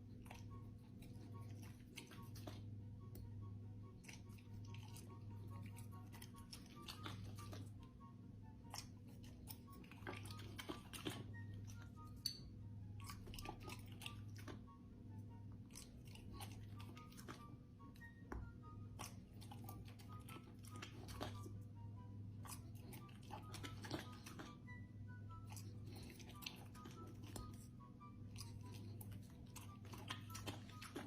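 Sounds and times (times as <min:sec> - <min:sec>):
pet chewing and crunching food: 0:00.0 - 0:31.0
soft music: 0:00.0 - 0:31.0.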